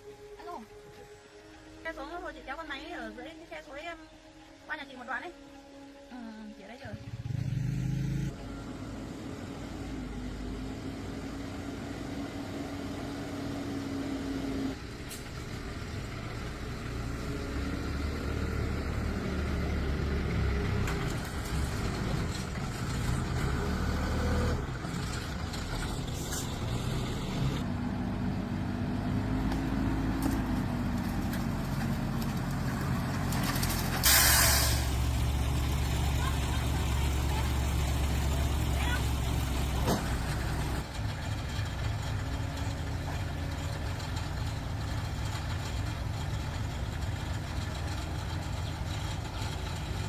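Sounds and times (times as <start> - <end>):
loud air hiss: 34.0 - 35.0
vehicle engine running: 34.8 - 50.0.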